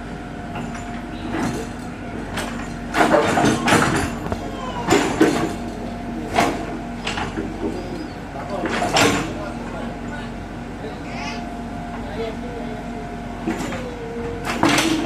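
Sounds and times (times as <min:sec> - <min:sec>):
diesel engine of heavy machinery: 0:00.0 - 0:15.0.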